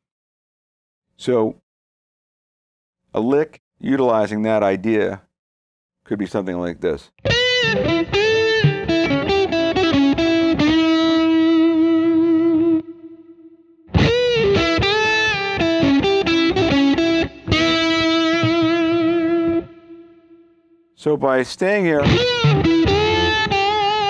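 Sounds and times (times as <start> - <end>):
electric guitar blues lick: 7.2 - 20.4, 22.0 - 24.0.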